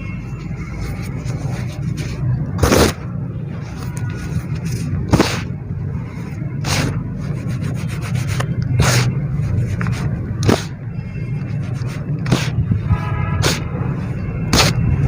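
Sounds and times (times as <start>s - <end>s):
dry dirt rubbing: 3.6s - 12.8s.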